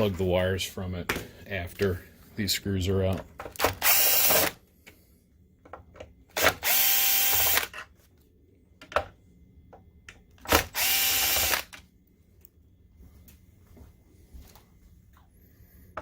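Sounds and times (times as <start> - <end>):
screw gun motor running: 3.7 - 4.6, 6.4 - 7.8, 10.5 - 11.8.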